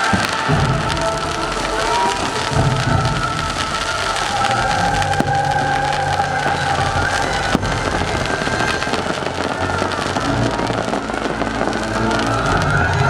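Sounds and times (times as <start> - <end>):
fireworks bursting and crackling: 0.0 - 13.0
orchestral music: 0.0 - 13.0.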